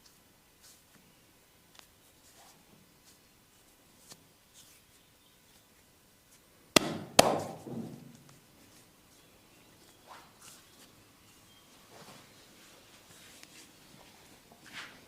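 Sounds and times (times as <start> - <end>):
hands slapping body: 6.8 - 7.7.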